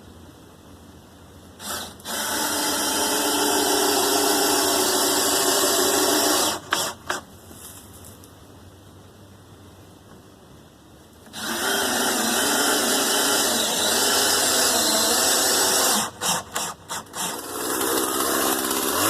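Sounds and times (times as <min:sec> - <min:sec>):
electric power tool motor: 0:11.3 - 0:19.0.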